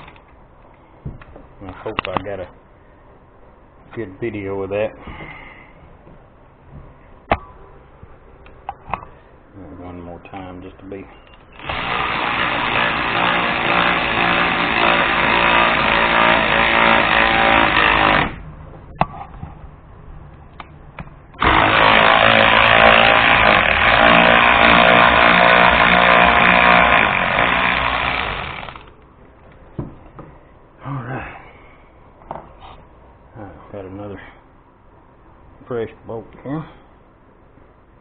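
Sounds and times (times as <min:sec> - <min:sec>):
cordless electric ratchet running: 0:11.6 - 0:18.4, 0:21.4 - 0:28.9.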